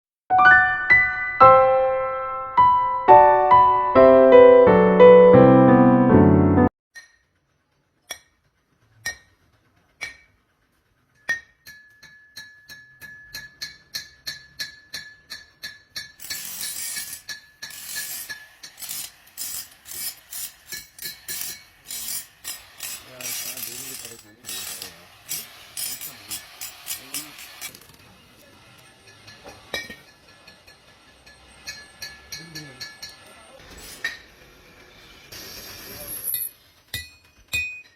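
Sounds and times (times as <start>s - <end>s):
piano music: 0.3s - 6.7s
noisy metalworking strokes: 7.0s - 37.9s.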